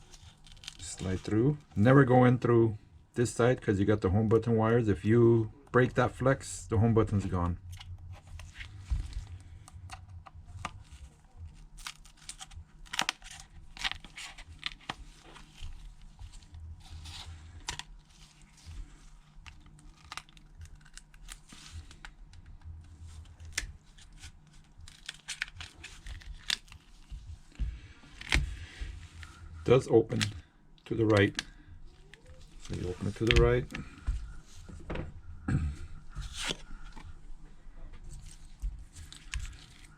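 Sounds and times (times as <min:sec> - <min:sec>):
adhesive crackling and snapping: 0:00.0 - 0:01.0, 0:07.6 - 0:28.6, 0:30.1 - 0:34.1, 0:38.2 - 0:39.9.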